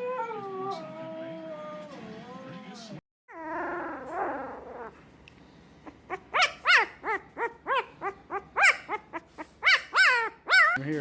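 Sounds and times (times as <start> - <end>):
dog yipping: 5.8 - 10.8.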